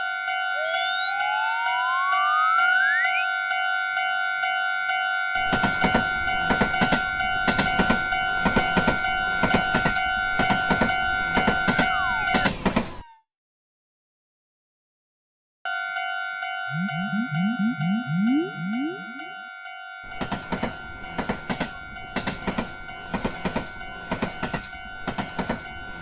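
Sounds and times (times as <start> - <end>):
two-pitch electronic warning signal: 0.5 - 3.3, 16.7 - 19.3
train wheel clatter: 5.4 - 13.0, 20.1 - 26.0.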